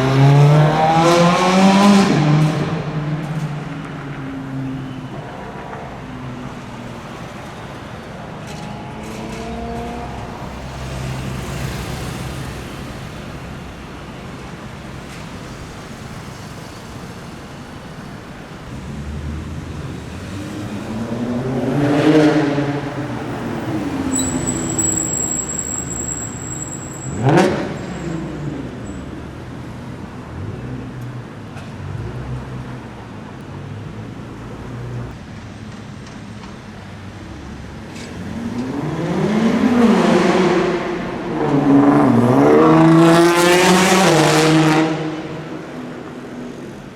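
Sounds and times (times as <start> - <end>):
sports cars in traffic: 0.0 - 46.9
car driving past loudly: 18.7 - 26.5, 38.1 - 46.8.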